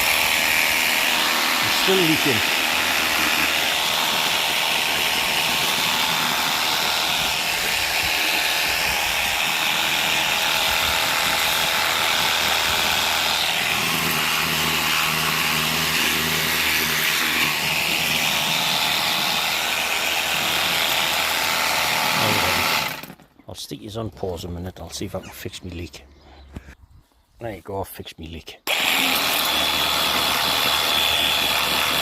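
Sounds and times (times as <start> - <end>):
pressure washer motor whirring: 0.0 - 23.2, 28.7 - 32.0.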